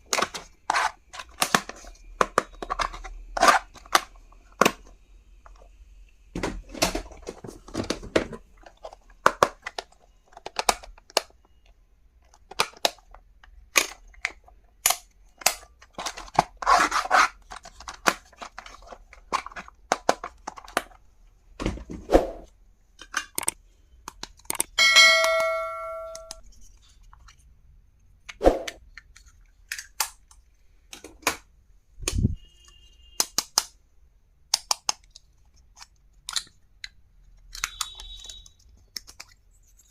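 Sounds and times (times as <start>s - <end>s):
metallic ding: 24.8s - 26.4s.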